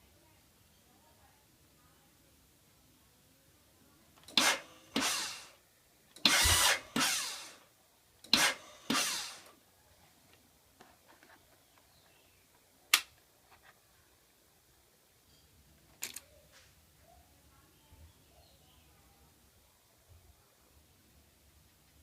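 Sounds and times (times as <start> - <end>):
electric starter whirring: 4.2 - 5.6, 6.2 - 7.6, 8.2 - 9.5.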